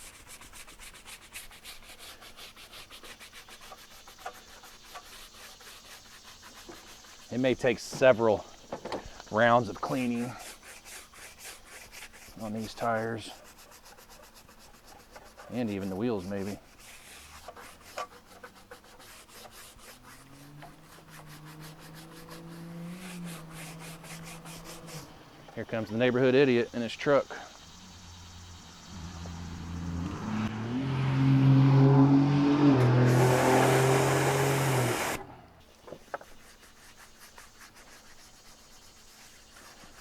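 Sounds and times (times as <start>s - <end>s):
scrubbing a wet tire: 0.0s - 8.5s, 9.3s - 27.4s, 32.6s - 40.0s
passing truck engine hum: 20.0s - 25.5s, 27.6s - 35.6s.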